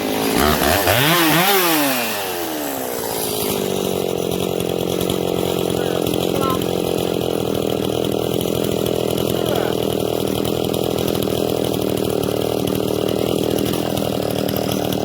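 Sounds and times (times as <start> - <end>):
chainsaw cutting wood: 0.0 - 15.0.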